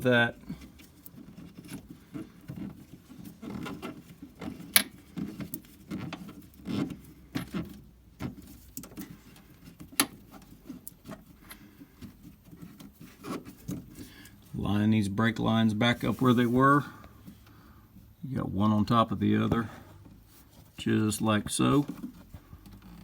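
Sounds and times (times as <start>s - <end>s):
light clicks taps and rustles: 0.6s - 14.5s.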